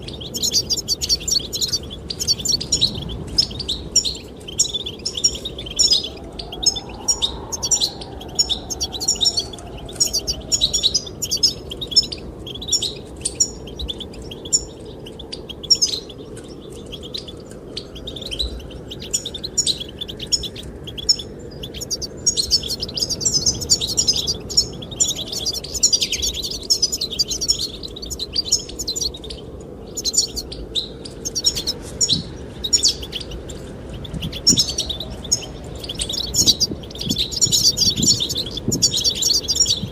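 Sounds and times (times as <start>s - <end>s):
birds twittering: 0.0s - 39.9s
wind rushing: 5.4s - 12.4s, 31.6s - 39.9s.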